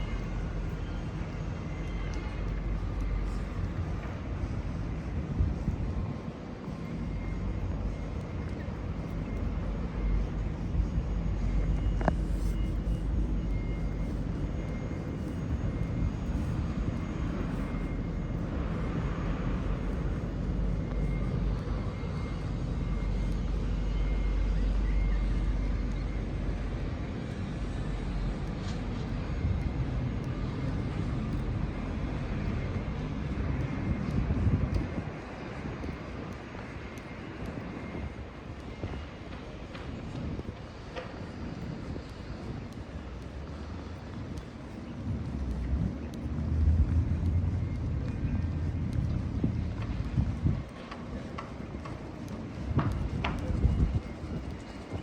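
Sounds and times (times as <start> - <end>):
low rumble of city ambience: 0.0 - 55.0.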